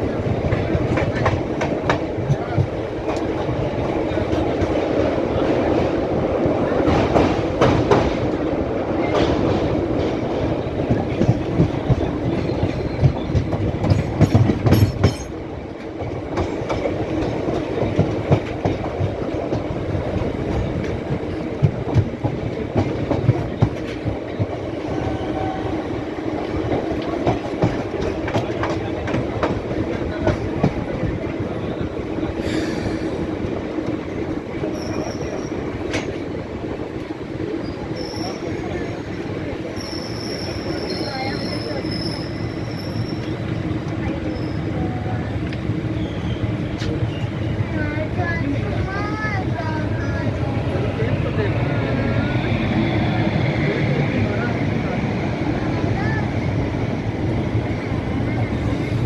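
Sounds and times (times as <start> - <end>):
train rumbling on rails: 0.0 - 59.0
wheels clicking over rail joints: 9.1 - 24.6.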